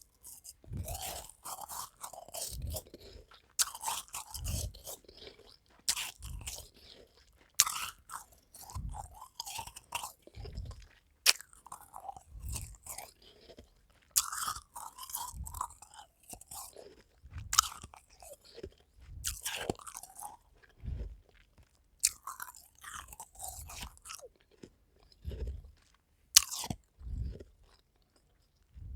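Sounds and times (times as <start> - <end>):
ice cubes crunching: 0.0 - 10.4, 11.3 - 13.6, 14.2 - 17.0.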